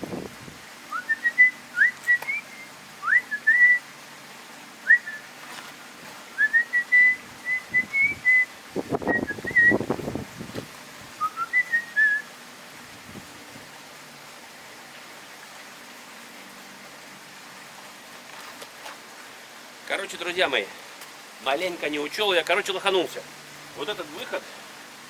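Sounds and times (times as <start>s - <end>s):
person whistling a tune: 0.9s - 3.8s, 4.9s - 5.2s, 6.4s - 8.5s, 9.1s - 9.8s, 11.2s - 12.3s
low rustling noise: 5.1s - 6.5s.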